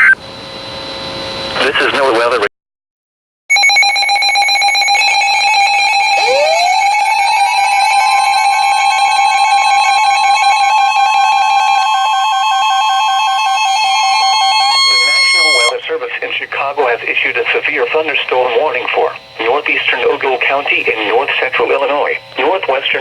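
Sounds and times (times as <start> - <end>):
steady alert tone: 3.5 - 8.7
warbling electronic alarm: 3.5 - 15.8.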